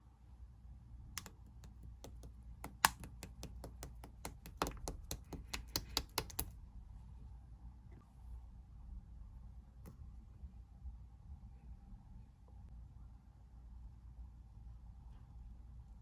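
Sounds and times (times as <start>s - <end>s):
slime popping clicks: 1.2s - 6.5s.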